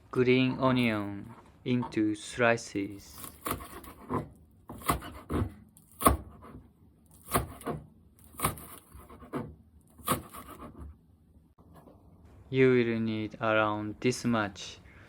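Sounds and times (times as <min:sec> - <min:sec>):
knife chopping on cutting board: 0:03.1 - 0:06.6, 0:07.2 - 0:10.9.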